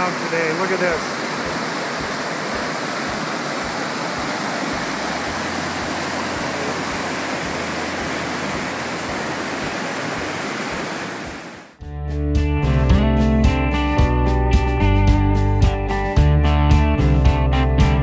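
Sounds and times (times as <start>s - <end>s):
waterfall roaring: 0.0s - 11.8s.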